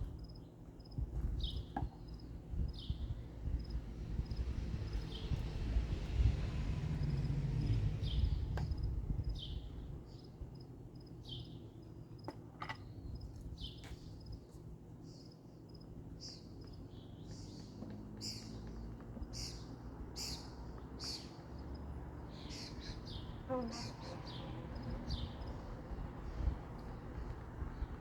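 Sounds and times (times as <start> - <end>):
birds chirping: 0.2 - 5.8, 7.0 - 14.3, 15.0 - 28.0
low rumble: 2.6 - 10.0.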